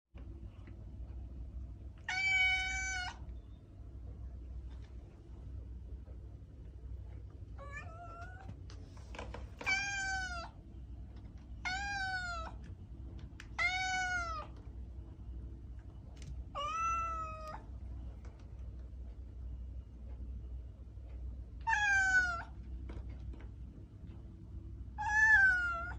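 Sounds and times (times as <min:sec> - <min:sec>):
steady low hum: 0:00.2 - 0:25.9
cat meowing: 0:02.0 - 0:03.3, 0:07.6 - 0:08.5, 0:09.6 - 0:10.6, 0:11.6 - 0:12.6, 0:13.6 - 0:14.6, 0:16.6 - 0:17.6, 0:21.6 - 0:22.6, 0:25.0 - 0:25.9.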